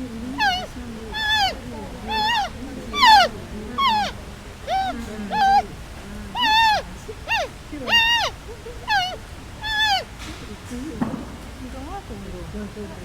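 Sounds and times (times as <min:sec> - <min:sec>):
cat meowing: 0:00.4 - 0:05.7, 0:06.3 - 0:10.1.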